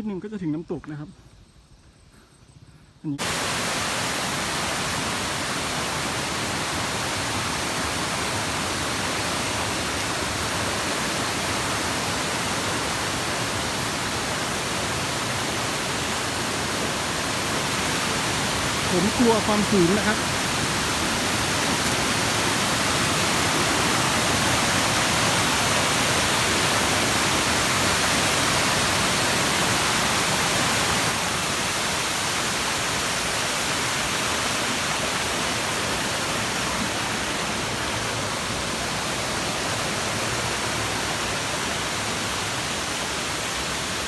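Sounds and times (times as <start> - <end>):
waterfall rushing: 3.2 - 44.0.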